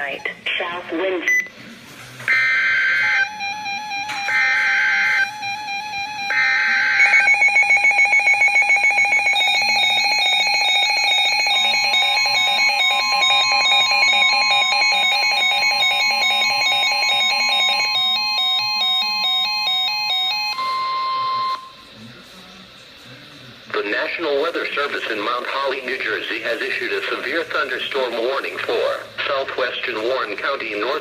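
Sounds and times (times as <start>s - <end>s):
electronic alarm beeps: 1.2s - 1.6s, 2.3s - 21.9s
steady high attention tone: 2.2s - 22.8s.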